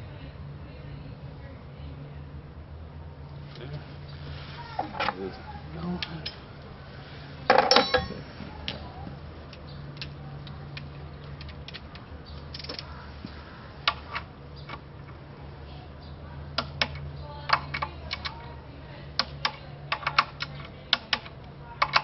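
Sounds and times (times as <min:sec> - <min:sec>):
steady low hum: 0:00.0 - 0:22.0
tool handling: 0:04.6 - 0:06.5, 0:07.3 - 0:15.2.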